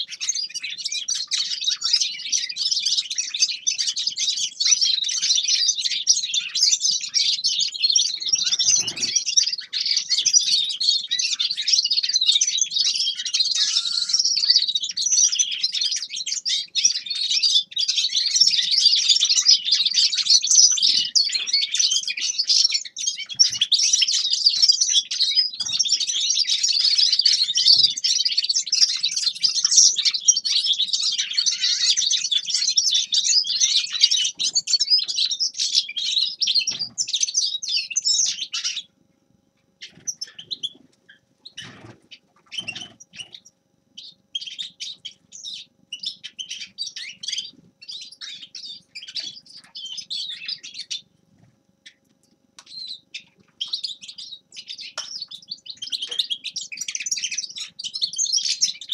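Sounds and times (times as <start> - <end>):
finch twittering song: 0.0 - 38.9, 39.8 - 51.1, 51.8 - 58.9.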